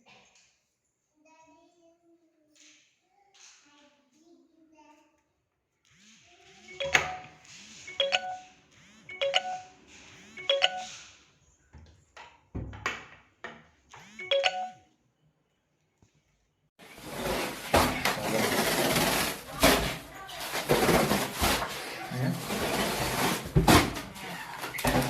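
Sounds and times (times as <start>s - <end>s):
loud dense rustling: 16.8s - 25.0s.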